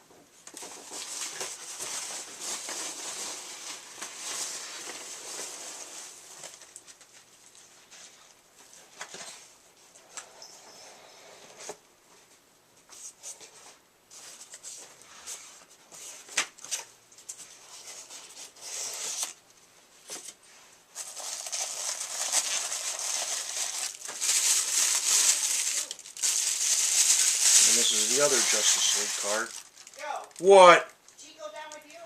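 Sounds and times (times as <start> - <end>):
plastic and cardboard crinkling: 0.5 - 9.5, 20.0 - 30.5
packaging rustling and clicking: 21.0 - 30.4.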